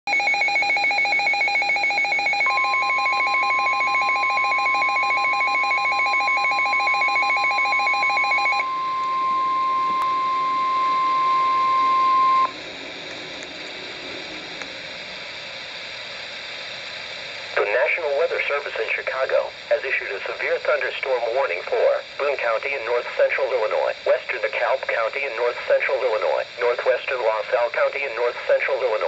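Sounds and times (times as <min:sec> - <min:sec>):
pulsing electronic alarm beeps: 0:00.1 - 0:12.6
steady warning alarm tone: 0:00.1 - 0:13.0
faint radio hiss: 0:12.8 - 0:29.0.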